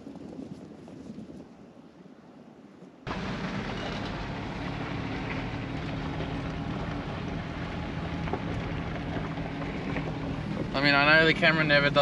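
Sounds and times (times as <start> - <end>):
wind noise on microphone: 0.0 - 12.0
vehicle engine running: 3.1 - 12.0.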